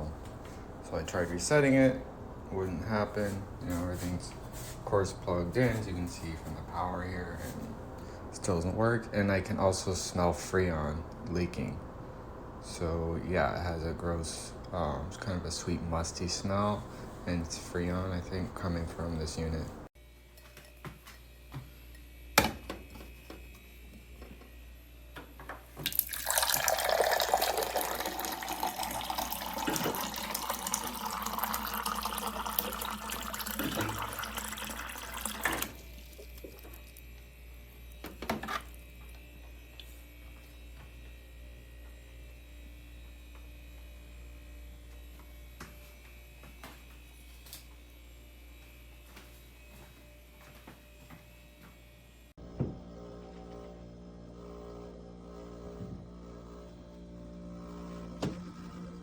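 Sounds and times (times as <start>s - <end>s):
water running from dispenser: 25.8s - 37.0s.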